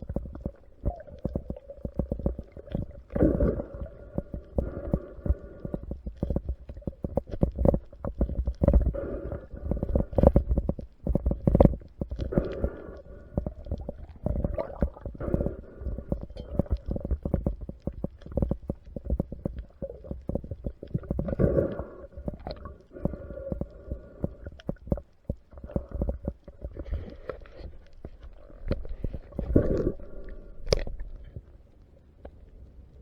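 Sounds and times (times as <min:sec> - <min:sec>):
muffled underwater rumble: 0:00.0 - 0:33.0
small underwater clicks and knocks: 0:00.0 - 0:33.0.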